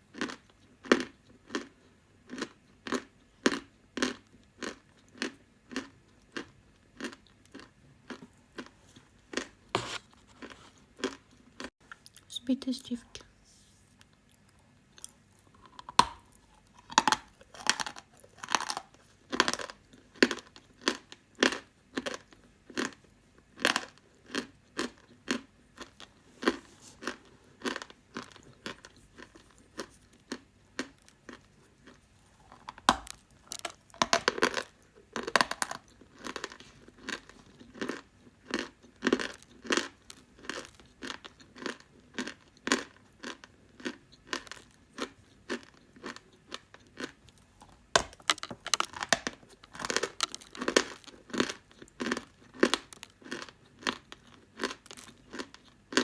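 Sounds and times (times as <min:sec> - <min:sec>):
dry clay crunching: 0:15.0 - 0:23.0, 0:43.8 - 0:56.0.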